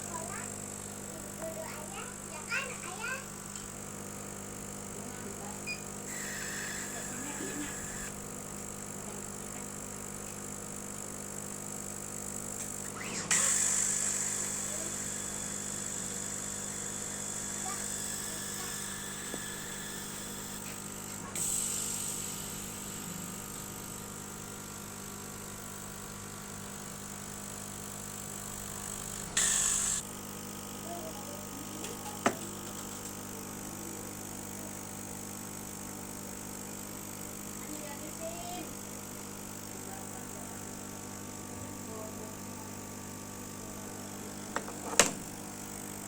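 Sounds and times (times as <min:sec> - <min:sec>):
laser cutter hum and hiss: 0:00.0 - 0:46.0
hissing bursts: 0:13.0 - 0:15.8.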